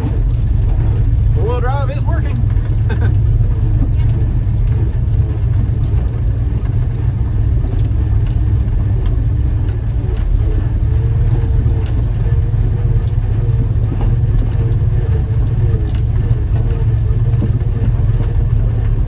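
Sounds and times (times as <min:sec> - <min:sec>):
body clicks and rattles: 0:00.0 - 0:19.0
engine low rumble: 0:00.0 - 0:19.0.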